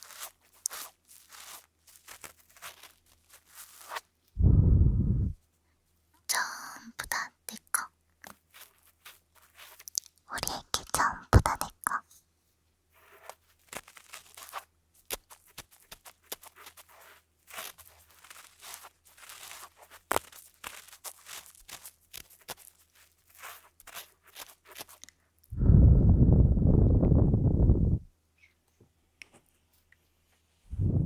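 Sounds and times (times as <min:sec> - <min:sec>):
loud deeper sound: 0:04.4 - 0:05.4, 0:25.5 - 0:28.1.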